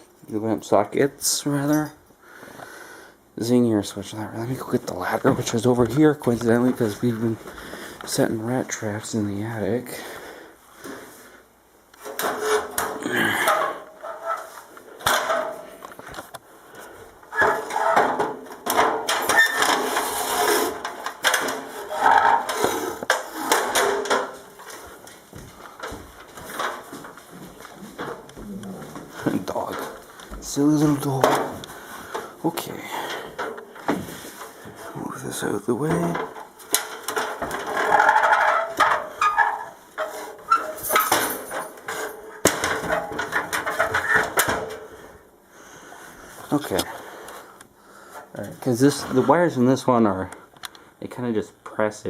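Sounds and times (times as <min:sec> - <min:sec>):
ladder knocking and clattering: 0:12.0 - 0:16.3, 0:17.3 - 0:32.4, 0:35.8 - 0:44.9.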